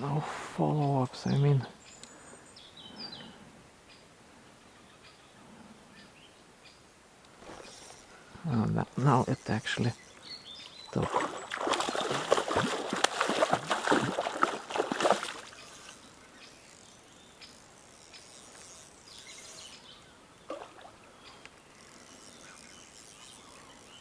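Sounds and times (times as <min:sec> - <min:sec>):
stream noise: 0:06.5 - 0:22.0
fish thrashing and splashing: 0:10.9 - 0:16.0.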